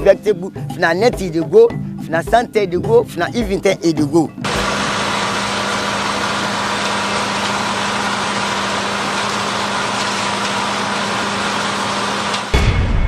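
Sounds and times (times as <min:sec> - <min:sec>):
heavy machine engine running: 0:04.4 - 0:12.7.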